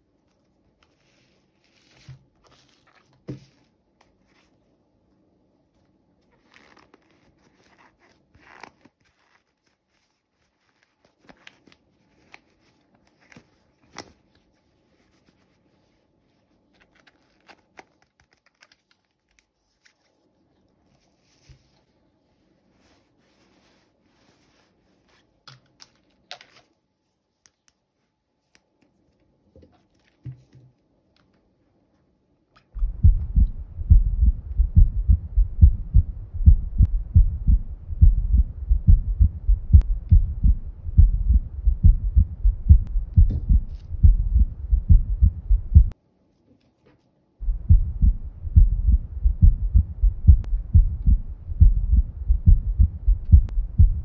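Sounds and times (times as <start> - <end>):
low heartbeat-like pulsing: 32.8 - 45.9, 47.4 - 54.0.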